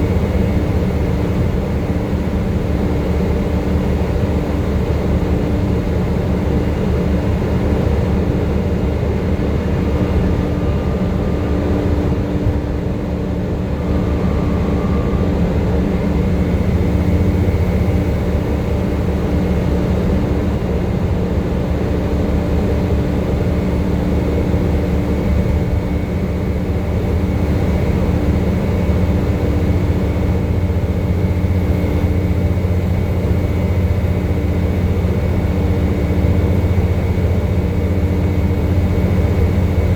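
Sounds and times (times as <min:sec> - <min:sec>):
bus diesel engine running: 0:00.0 - 0:39.9
faint high whine: 0:07.7 - 0:20.2.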